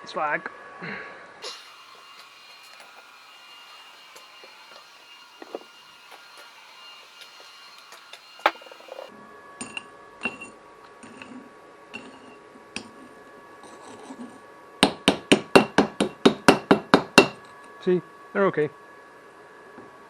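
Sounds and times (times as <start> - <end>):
hammer tapping on metal: 1.5 - 9.1.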